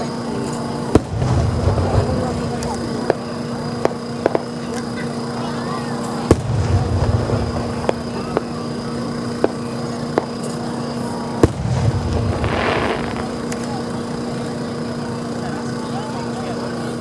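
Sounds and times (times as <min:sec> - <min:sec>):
crackling firework fizz: 0:00.0 - 0:16.8
sharp firework pops: 0:00.5 - 0:05.0, 0:06.2 - 0:14.3
firework booms with rumbling echo: 0:00.9 - 0:04.6, 0:06.3 - 0:10.4, 0:11.2 - 0:14.4.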